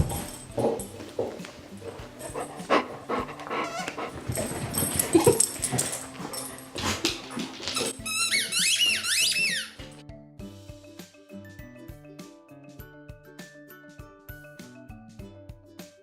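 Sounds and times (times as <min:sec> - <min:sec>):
dog sounds: 0:00.0 - 0:09.6
high wavering squeaks: 0:07.9 - 0:09.9.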